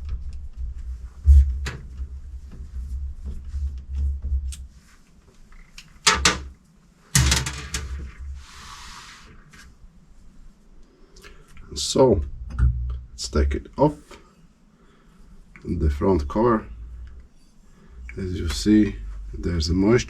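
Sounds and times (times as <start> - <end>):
loud clattering impacts: 7.1 - 8.1
tools and metal parts clattering: 7.2 - 8.0.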